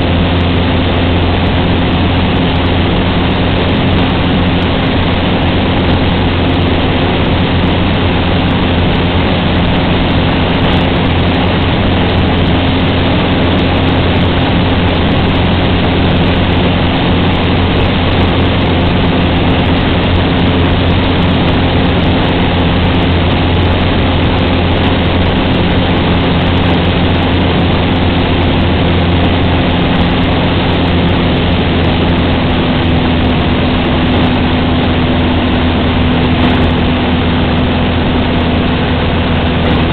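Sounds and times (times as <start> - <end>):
light aircraft engine drone: 0.0 - 39.9.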